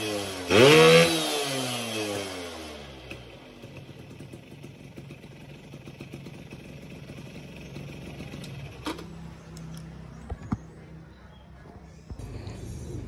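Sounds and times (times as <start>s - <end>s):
two-stroke engine idling: 1.8s - 10.2s.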